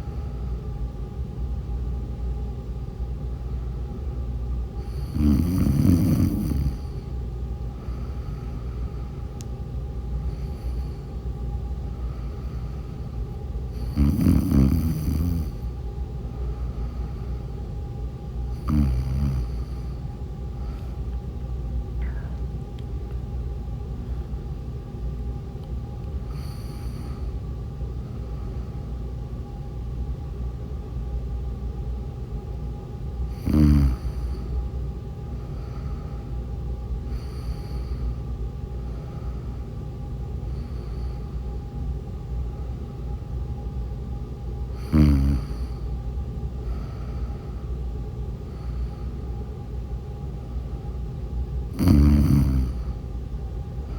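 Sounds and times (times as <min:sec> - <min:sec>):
steady low hum: 0:00.0 - 0:53.9
woman snoring: 0:04.9 - 0:06.9, 0:13.8 - 0:15.6, 0:18.6 - 0:19.8, 0:33.4 - 0:34.4, 0:44.8 - 0:45.8, 0:51.8 - 0:52.9.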